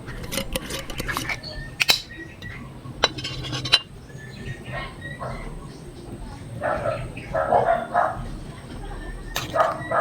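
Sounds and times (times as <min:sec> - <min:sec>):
cutlery clinking on a dish: 0:00.1 - 0:03.9.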